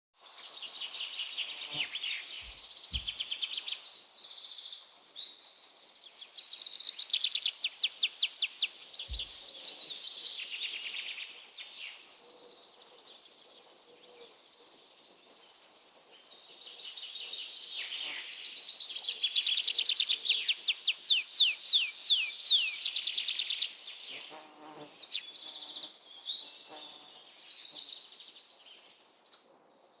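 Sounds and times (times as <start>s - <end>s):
birds chirping and singing: 8.6s - 11.2s.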